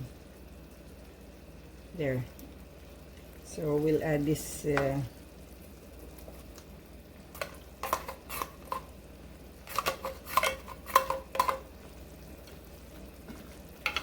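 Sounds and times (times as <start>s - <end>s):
metal utensil clinking on pot: 9.7s - 11.6s.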